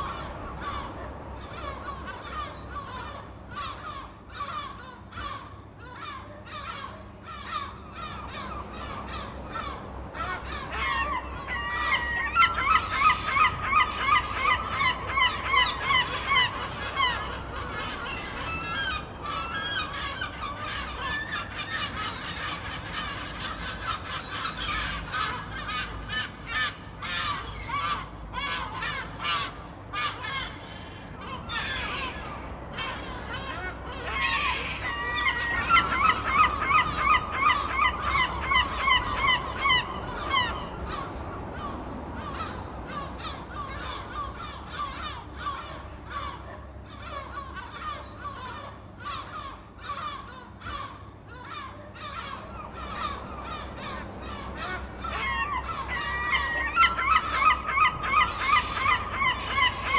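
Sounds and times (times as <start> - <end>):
gulls squawking: 0.0 - 59.9
low steady rumble: 0.0 - 59.9.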